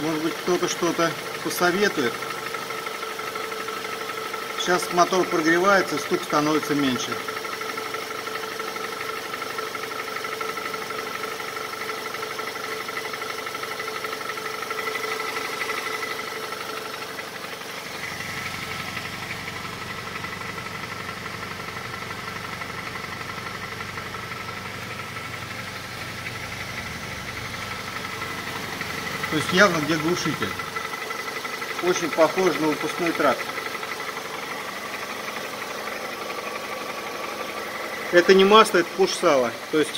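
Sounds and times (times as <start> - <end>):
car engine idling: 0.0 - 39.9
exhaust knocking: 0.0 - 39.9.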